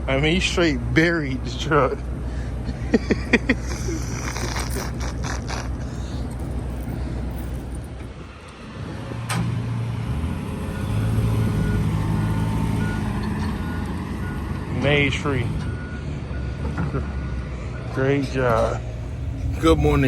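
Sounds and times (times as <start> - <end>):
heavy vehicle engines running: 0.0 - 20.0.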